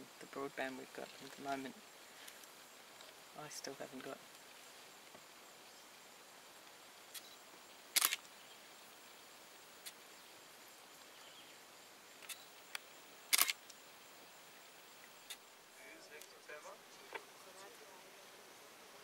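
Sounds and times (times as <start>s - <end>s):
faint outdoor hiss: 0.0s - 19.0s
camera shutters clicking: 8.0s - 8.2s, 13.3s - 13.6s.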